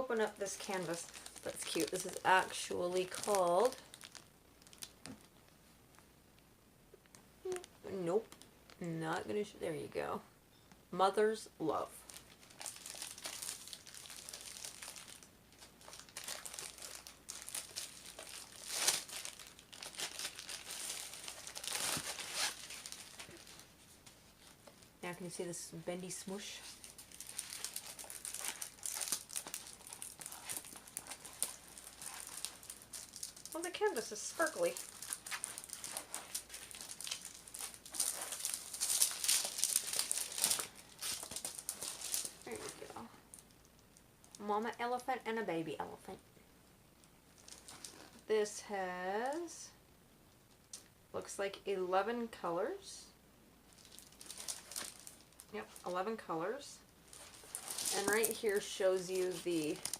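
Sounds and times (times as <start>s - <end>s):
canvas crinkling and rustling: 0.0s - 5.4s, 12.0s - 25.0s, 26.3s - 44.4s, 47.3s - 48.3s, 53.7s - 56.0s, 57.0s - 59.9s.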